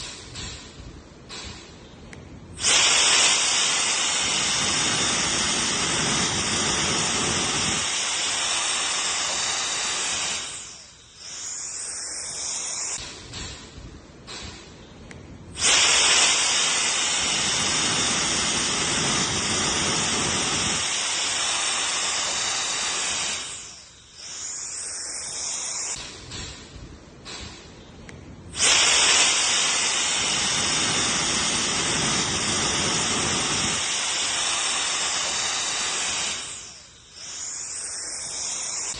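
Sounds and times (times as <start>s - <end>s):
jet blower whine and air rush: 2.5s - 13.5s, 15.5s - 26.1s, 28.5s - 38.9s.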